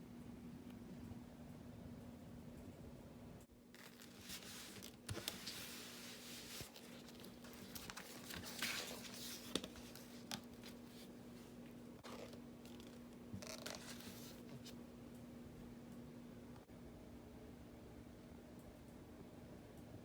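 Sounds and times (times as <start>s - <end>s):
cardboard and paper rustling: 3.8s - 14.8s.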